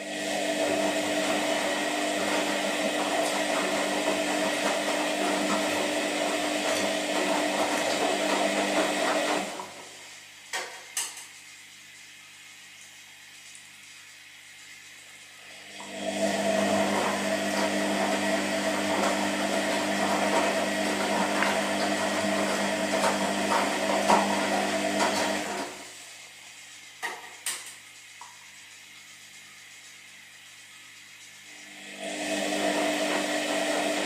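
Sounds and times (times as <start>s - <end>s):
appliance motor running: 0.0s - 10.0s, 15.5s - 25.9s, 31.5s - 34.0s.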